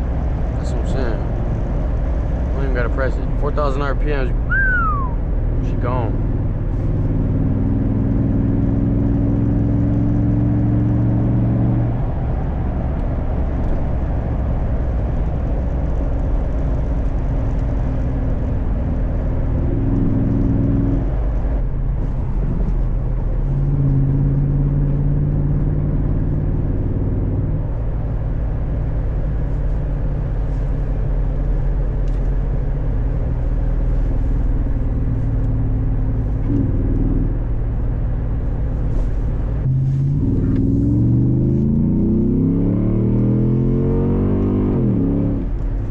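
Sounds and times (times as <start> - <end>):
car engine accelerating hard: 0.0 - 45.9.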